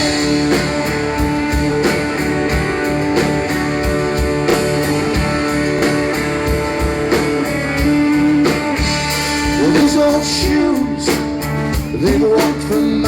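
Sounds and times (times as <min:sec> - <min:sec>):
guitars: 0:00.0 - 0:13.0
steady drum beat: 0:00.0 - 0:13.0.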